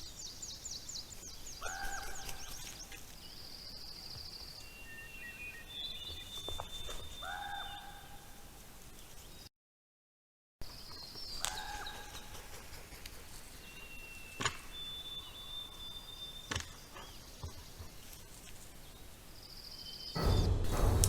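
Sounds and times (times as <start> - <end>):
faint woodland ambience: 0.0 - 9.5, 10.6 - 21.0
thin bird whistles: 13.7 - 16.5.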